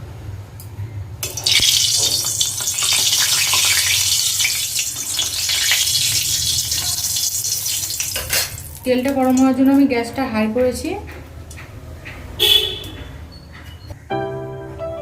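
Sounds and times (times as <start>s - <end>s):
water running from a tap: 1.2s - 9.8s.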